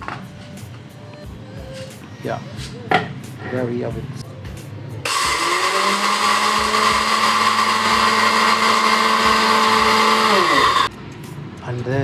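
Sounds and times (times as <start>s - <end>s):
coffee grinder motor running: 5.1s - 10.9s.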